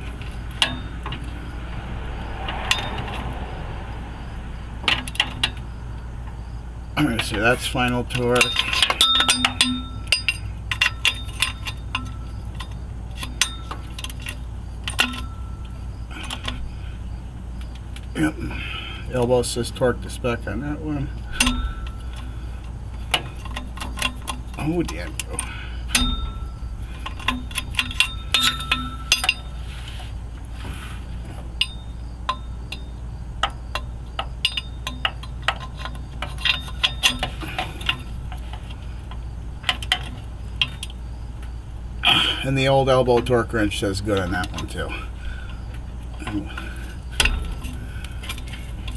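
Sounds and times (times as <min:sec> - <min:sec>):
steady low hum: 0:00.0 - 0:48.9
hand tools clinking on metal: 0:07.0 - 0:16.6, 0:21.3 - 0:30.2, 0:31.6 - 0:38.4
wrench clicking on metal bolts: 0:07.2 - 0:16.6, 0:21.4 - 0:22.3, 0:23.1 - 0:29.6, 0:31.6 - 0:38.5.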